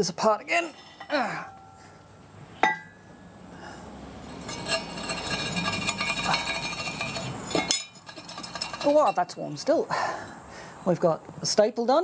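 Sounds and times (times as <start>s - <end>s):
metal parts clinking and ringing: 4.3s - 9.4s.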